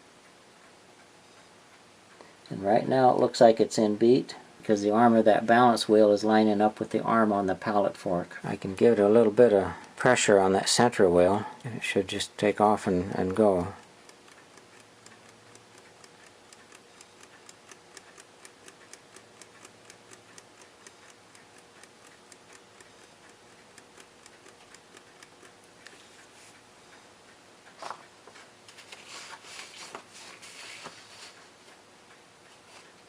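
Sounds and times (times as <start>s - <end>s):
alarm clock ticking rapidly: 4.8s - 11.3s, 11.9s - 25.9s
rustling handling noise: 27.8s - 31.8s.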